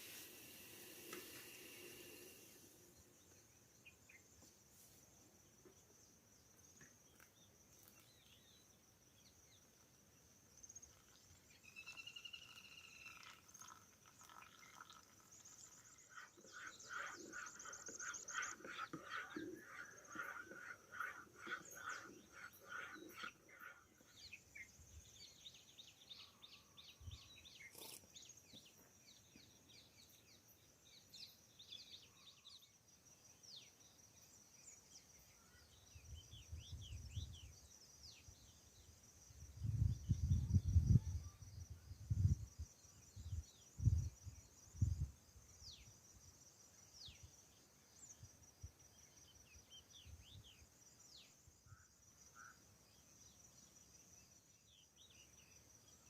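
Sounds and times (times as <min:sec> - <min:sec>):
rapid repeated bird calls: 0:00.0 - 0:04.5, 0:10.7 - 0:30.4, 0:48.9 - 0:56.0
high insect drone: 0:00.0 - 0:56.0
birds chirping: 0:10.7 - 0:30.4.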